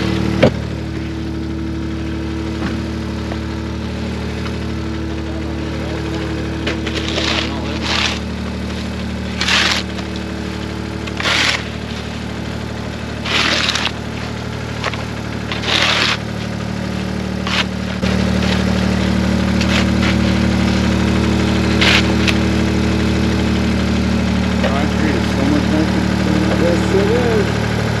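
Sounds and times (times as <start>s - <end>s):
engine running steadily: 0.0s - 28.0s.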